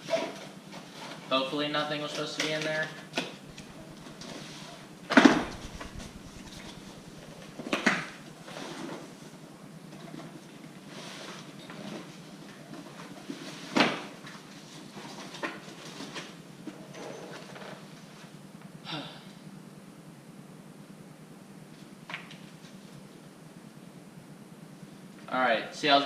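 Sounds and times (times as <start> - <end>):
cardboard rustling and scraping: 3.4 - 9.3.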